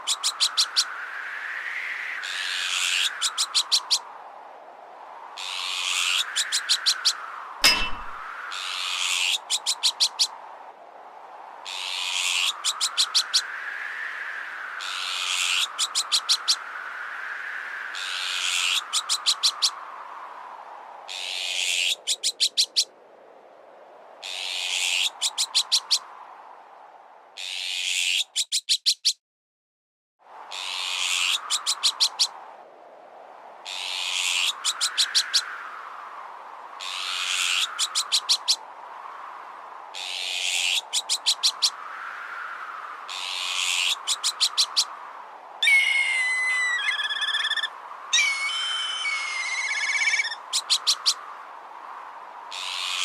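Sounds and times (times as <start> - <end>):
whistling wind tone: 0.0 - 5.4, 12.4 - 14.8, 43.7 - 53.0
sharp clicking strikes: 7.6 - 8.2
short harsh bird call: 45.6 - 50.4.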